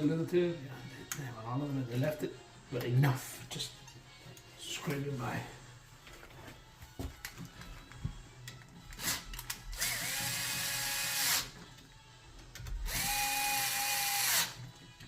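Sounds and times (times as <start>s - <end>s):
cordless drill whining: 9.8s - 11.5s, 12.9s - 14.6s.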